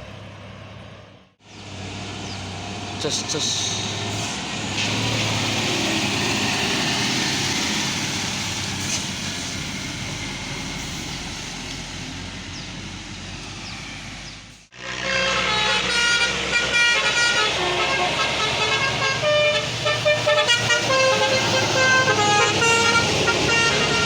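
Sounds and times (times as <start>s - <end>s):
bus driving past: 0.0s - 24.0s
bus multi-tone horn tune: 14.7s - 24.0s.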